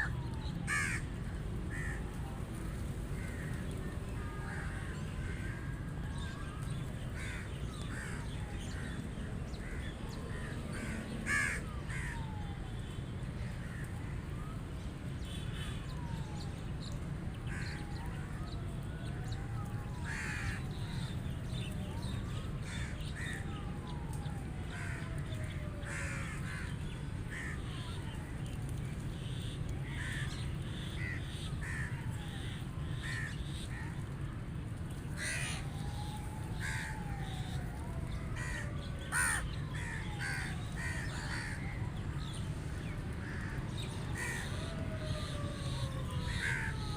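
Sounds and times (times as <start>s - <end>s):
rooks cawing: 0.0s - 2.2s, 3.0s - 6.3s, 7.2s - 12.4s, 20.0s - 21.1s, 22.6s - 23.5s, 24.7s - 28.0s, 29.8s - 34.1s, 35.2s - 42.0s, 43.2s - 46.9s.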